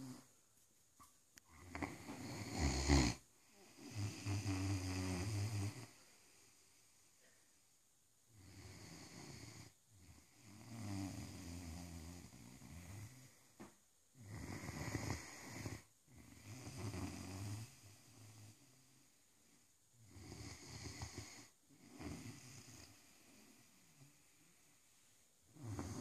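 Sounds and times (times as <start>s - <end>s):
dog snoring: 0.0s - 0.3s, 1.5s - 6.0s, 8.3s - 13.4s, 14.2s - 18.9s, 20.0s - 24.2s, 25.5s - 26.0s.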